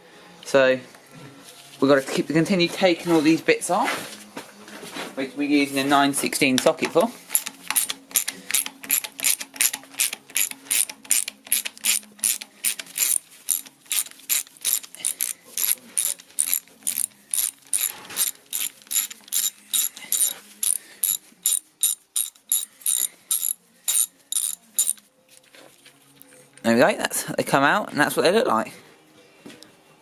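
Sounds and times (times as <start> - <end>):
ratchet wrench clicking: 7.3 - 25.0.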